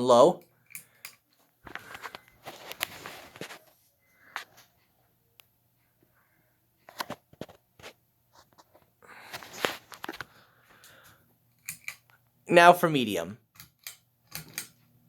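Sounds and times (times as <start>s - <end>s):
rustling: 1.3s - 4.8s, 6.9s - 11.1s.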